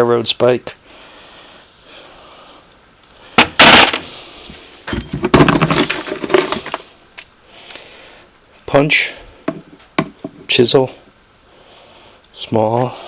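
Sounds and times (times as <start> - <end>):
metal tools clinking in toolbox: 3.5 - 4.1, 4.9 - 6.9
scraping clatter: 4.9 - 6.9.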